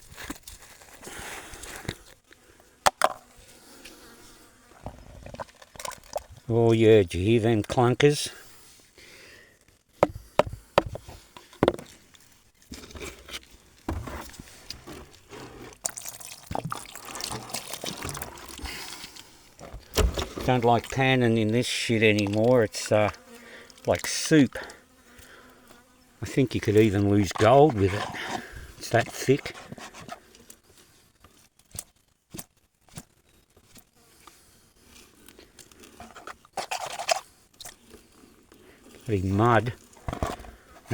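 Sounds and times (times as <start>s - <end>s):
muddy water sloshing: 4.9s - 6.5s, 14.8s - 23.8s.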